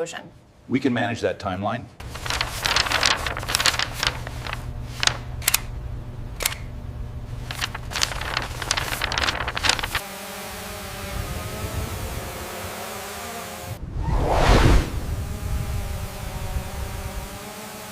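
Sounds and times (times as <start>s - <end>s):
low machine hum: 2.0s - 10.0s.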